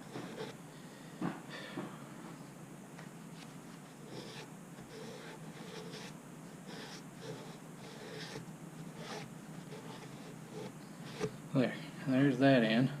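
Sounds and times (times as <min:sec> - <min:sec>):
hands rubbing and scraping metal parts: 0:00.0 - 0:00.6, 0:03.3 - 0:11.4.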